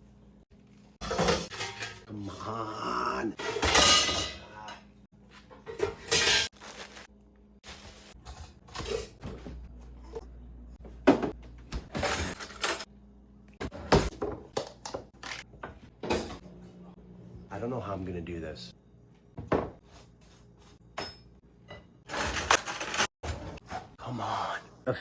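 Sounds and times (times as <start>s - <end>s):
dishes and pans clattering: 1.0s - 2.1s, 3.4s - 4.8s, 5.5s - 6.5s, 21.0s - 23.9s.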